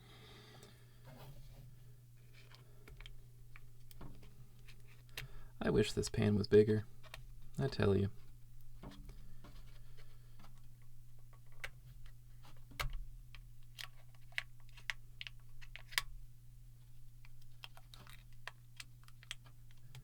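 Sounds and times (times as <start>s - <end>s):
plastic parts clicking: 17.3s - 20.0s.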